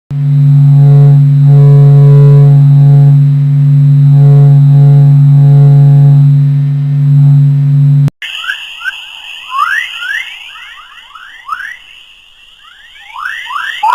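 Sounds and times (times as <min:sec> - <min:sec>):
low eerie hum with tones: 0:00.2 - 0:13.9
high hiss: 0:08.2 - 0:13.9
rising chirps: 0:08.2 - 0:13.9.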